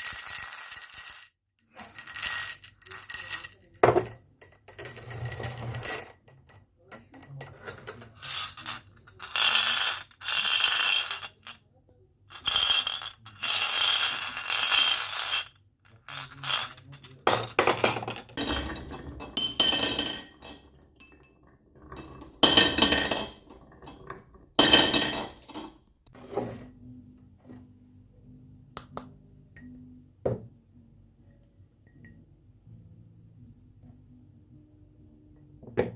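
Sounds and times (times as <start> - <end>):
marbles rolling down track: 8.0 - 11.6, 12.3 - 18.4.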